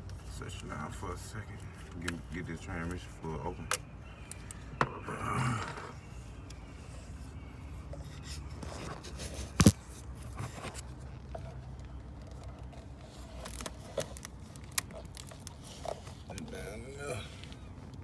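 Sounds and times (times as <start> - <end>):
plastic bottle scraping and handling: 7.0 - 16.6.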